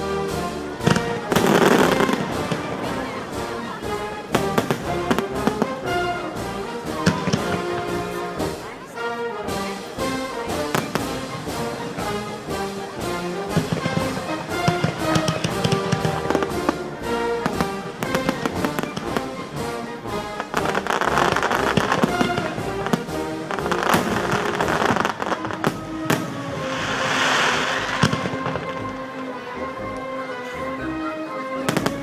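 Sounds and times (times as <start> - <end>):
fireworks crackling: 0.0 - 8.9, 9.5 - 29.2
music playing: 0.0 - 32.0
fireworks bangs: 0.8 - 5.7, 20.5 - 28.9.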